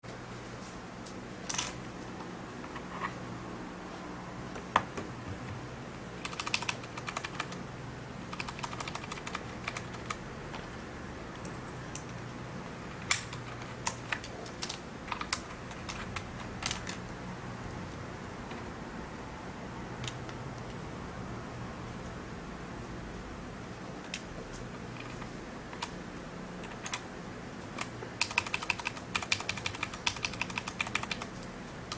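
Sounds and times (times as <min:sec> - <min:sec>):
keypad keys clicking: 0:06.2 - 0:07.6, 0:08.3 - 0:10.7, 0:13.0 - 0:17.0, 0:26.6 - 0:27.0, 0:27.8 - 0:31.4.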